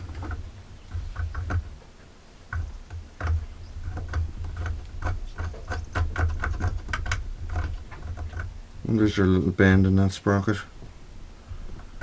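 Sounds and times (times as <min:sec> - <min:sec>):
metallic clicks and knocks: 0:00.0 - 0:08.6.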